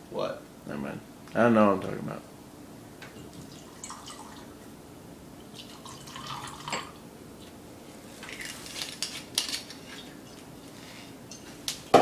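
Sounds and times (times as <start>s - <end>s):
liquid pouring into a glass: 3.2s - 4.6s, 5.5s - 7.0s.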